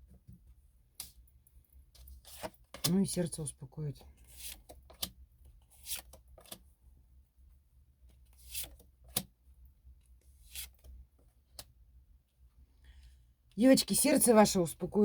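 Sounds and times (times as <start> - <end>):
cards rubbing and sliding: 2.1 - 2.5, 4.2 - 5.1, 5.7 - 6.6, 8.3 - 9.2, 10.4 - 10.9.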